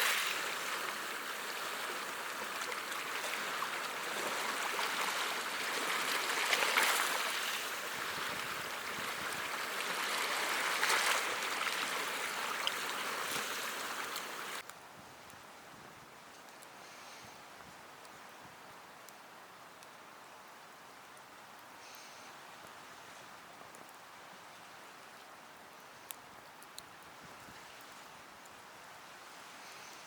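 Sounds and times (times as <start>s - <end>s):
sea waves washing onto shore: 0.0s - 14.6s
faint hiss: 0.0s - 30.0s.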